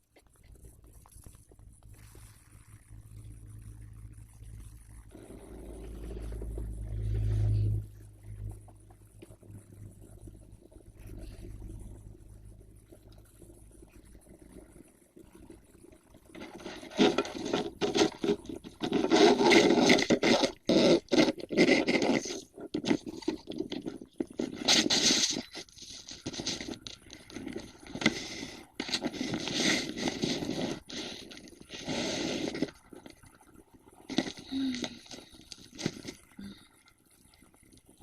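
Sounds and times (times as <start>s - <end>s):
irregular scraping: 16.3s - 33.2s, 34.1s - 36.2s.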